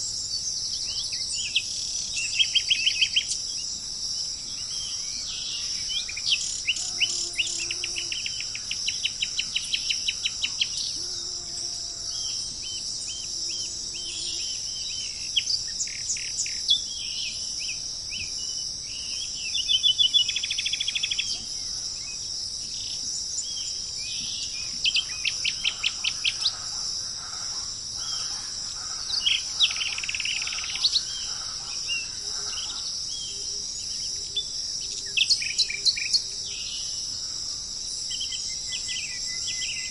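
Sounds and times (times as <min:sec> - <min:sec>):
high-pitched insect drone: 0:00.0 - 0:39.9
birds chirping and trilling: 0:12.1 - 0:37.3.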